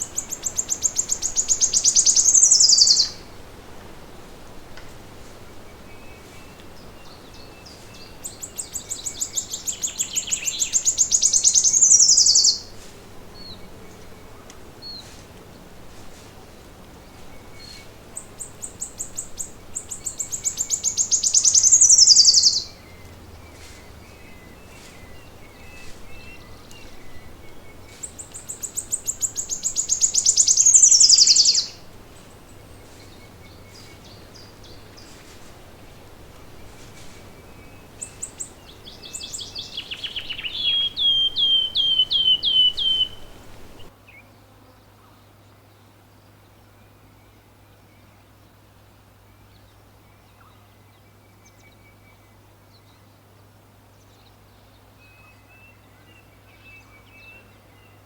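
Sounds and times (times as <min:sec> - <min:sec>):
faint bird chirps: 0:00.0 - 0:03.2, 0:05.9 - 0:12.7, 0:17.3 - 0:35.5, 0:36.5 - 0:44.3
songbird singing: 0:00.0 - 0:58.0.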